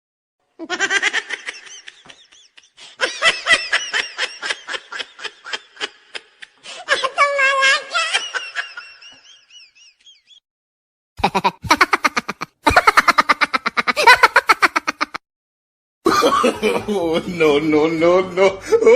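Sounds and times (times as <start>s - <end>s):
person laughing: 11.2s - 15.2s, 16.1s - 17.3s.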